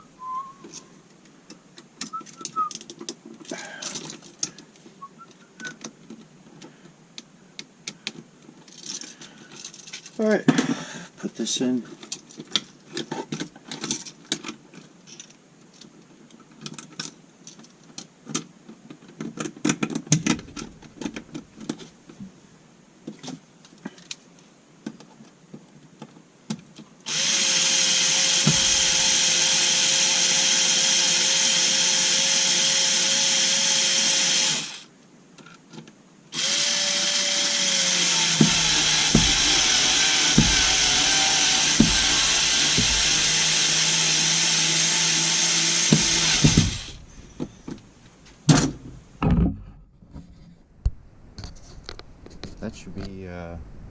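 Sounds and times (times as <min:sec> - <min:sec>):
clicks and knocks of parts: 0:00.7 - 0:04.9, 0:05.7 - 0:10.8, 0:12.0 - 0:22.2
electric drill motor whine: 0:27.1 - 0:34.9, 0:36.4 - 0:47.3.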